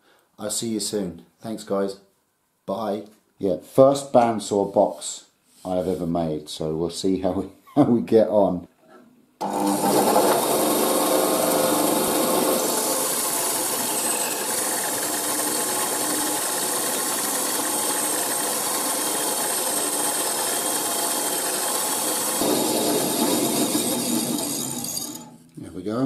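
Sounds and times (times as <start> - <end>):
bandsaw cutting through wood: 9.4 - 25.4.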